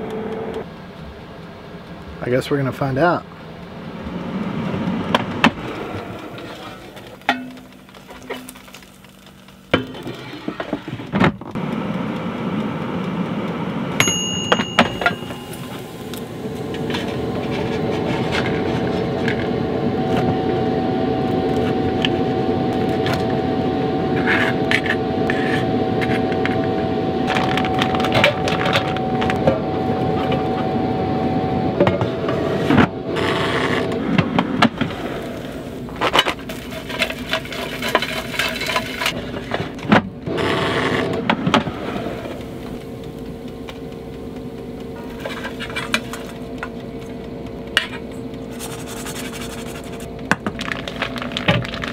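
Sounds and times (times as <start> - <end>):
air fryer fan whirring: 0.0 - 51.9
faint held tone: 14.0 - 33.2.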